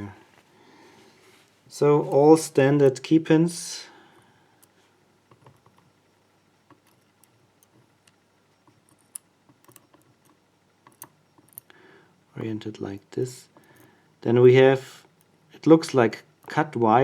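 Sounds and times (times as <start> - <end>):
small metal parts clicking: 6.7 - 11.7, 13.5 - 13.9.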